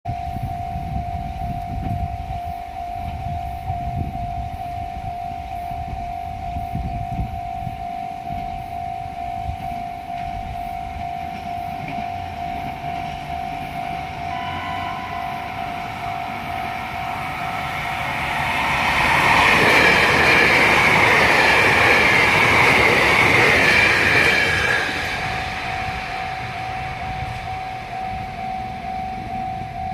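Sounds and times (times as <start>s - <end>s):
level crossing bell ringing: 7.4s - 22.2s, 24.5s - 29.9s
train electronic horn: 8.6s - 19.9s, 24.5s - 29.9s
train wheels rushing on rails: 9.4s - 29.9s.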